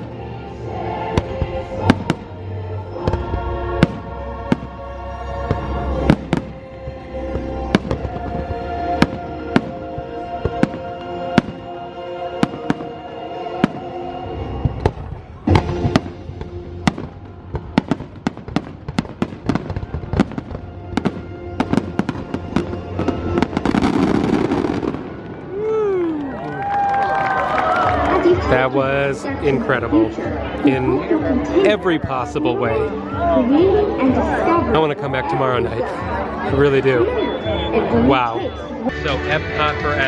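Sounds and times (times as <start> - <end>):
music with sustained chords: 0.0 - 25.5, 26.3 - 40.0
fireworks bursting: 7.3 - 11.7, 14.6 - 26.0.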